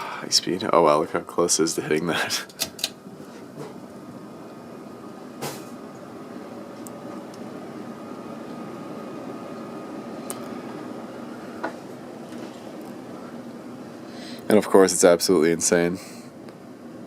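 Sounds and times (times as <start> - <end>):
ceiling fan running: 0.0 - 17.0
fan clicks: 2.3 - 3.0, 6.7 - 7.6, 9.5 - 10.9.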